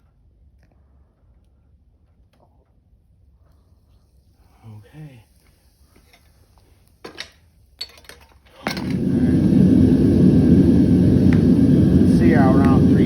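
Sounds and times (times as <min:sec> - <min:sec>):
gas burner roaring: 0:04.3 - 0:07.4, 0:08.4 - 0:13.0.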